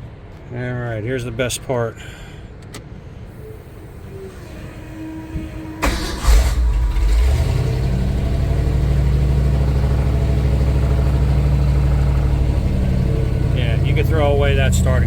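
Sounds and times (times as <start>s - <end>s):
engine starting and idling: 3.3s - 15.0s.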